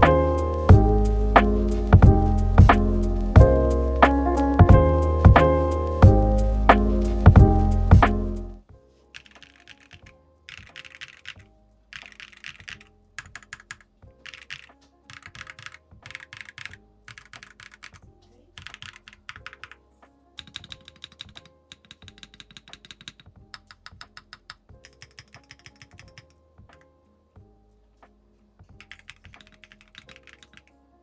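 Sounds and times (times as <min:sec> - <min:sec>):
background music: 0:00.0 - 0:31.0
fast mechanical keyboard typing: 0:09.2 - 0:11.4, 0:12.0 - 0:18.0, 0:18.6 - 0:19.8, 0:20.4 - 0:26.3, 0:28.8 - 0:30.7.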